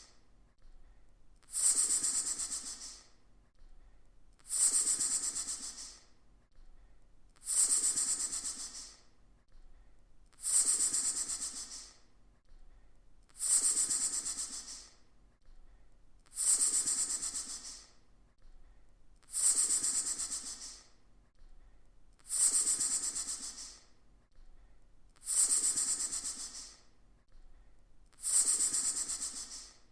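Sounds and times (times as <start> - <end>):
snake hissing: 19.3 - 20.8, 25.2 - 26.8, 28.2 - 29.7.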